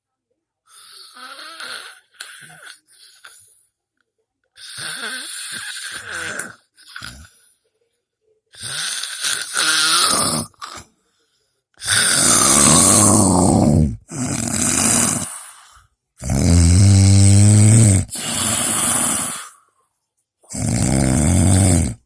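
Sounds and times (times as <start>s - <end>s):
person snoring: 0.7s - 3.3s, 4.6s - 7.3s, 8.6s - 10.8s, 11.8s - 19.7s, 20.5s - 22.0s.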